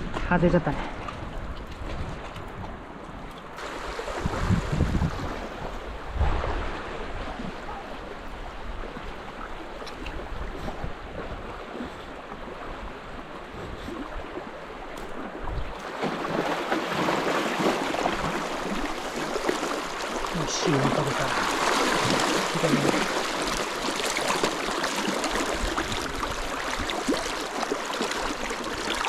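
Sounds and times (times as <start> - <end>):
rushing river water: 0.0 - 29.0
wind bumps on microphone: 1.0 - 2.9, 3.6 - 9.0, 10.2 - 11.6.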